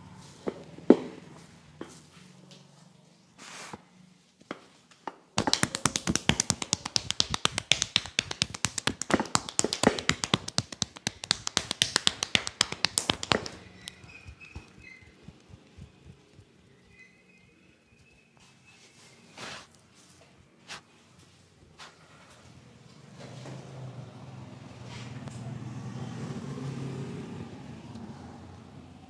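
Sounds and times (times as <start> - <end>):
hands slapping and tapping body: 5.4 - 17.0.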